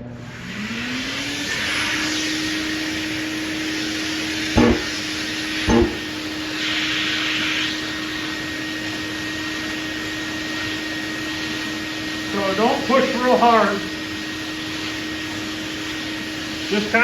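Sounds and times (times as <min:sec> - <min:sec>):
shop vacuum running: 0:00.0 - 0:17.0
sharp knocks: 0:04.6 - 0:05.0, 0:05.7 - 0:06.1.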